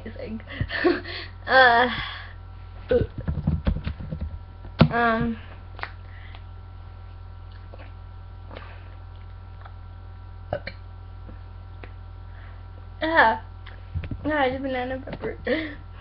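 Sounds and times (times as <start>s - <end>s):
low electrical hum: 0.0s - 16.0s.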